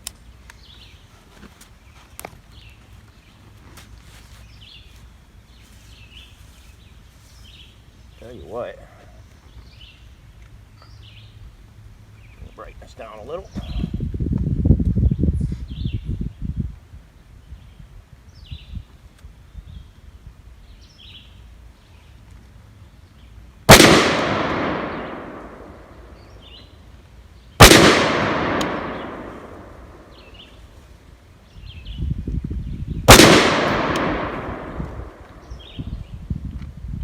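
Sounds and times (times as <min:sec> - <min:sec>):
gunshots with echo: 0:23.7 - 0:26.0, 0:27.6 - 0:30.2, 0:33.1 - 0:35.3.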